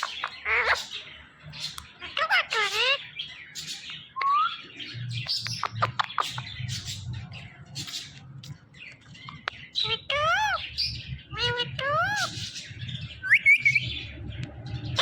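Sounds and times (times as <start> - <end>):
parakeet chirping: 0.0 - 14.2.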